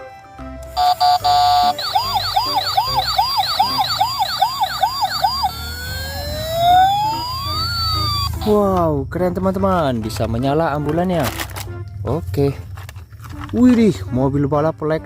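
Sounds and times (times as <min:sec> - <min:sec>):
toy siren beeps and wail: 0:00.7 - 0:08.6.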